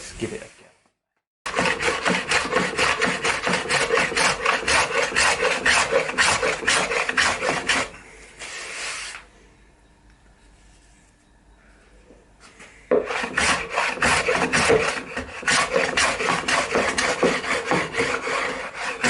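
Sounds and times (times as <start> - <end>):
hand tool strokes on wooden board: 12.5 - 19.0.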